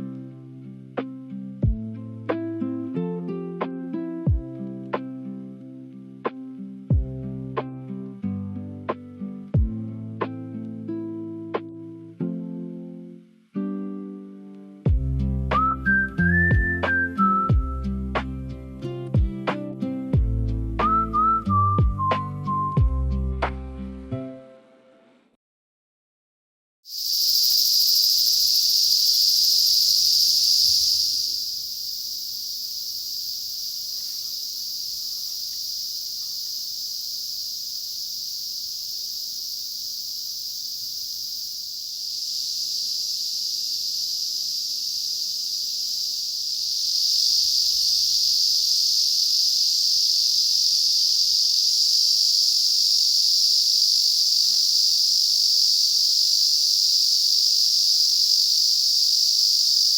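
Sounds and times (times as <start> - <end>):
insects chorus shrill hiss: 26.9 - 59.9.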